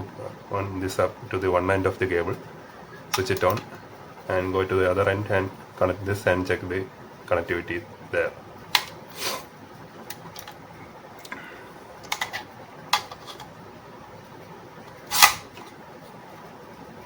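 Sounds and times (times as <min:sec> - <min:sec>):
plastic parts clicking: 0:12.0 - 0:13.5.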